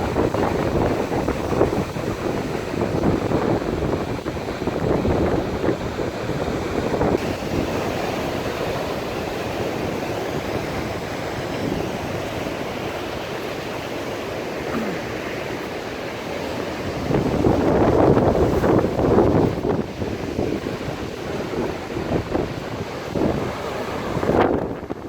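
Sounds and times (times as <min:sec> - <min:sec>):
waves breaking: 0:00.0 - 0:25.0
wind buffeting microphone: 0:00.0 - 0:25.0.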